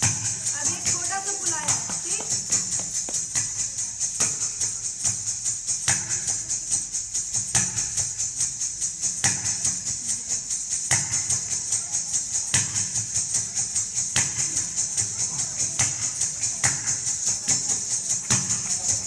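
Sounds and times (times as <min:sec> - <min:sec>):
bare feet stamping floor: 0:01.6 - 0:03.6.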